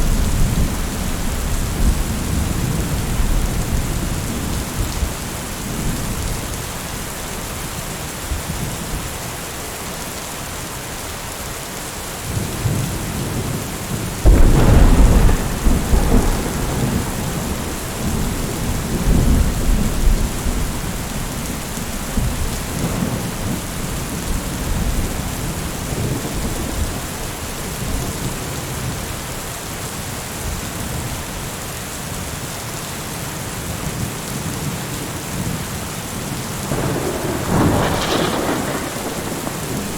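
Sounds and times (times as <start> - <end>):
thunder rumbling: 0.0 - 6.4, 12.6 - 29.0, 36.6 - 39.9
heavy rain hissing: 0.0 - 31.4, 35.0 - 39.9
thunderclap rolling into rumble: 14.2 - 28.6, 36.7 - 39.9.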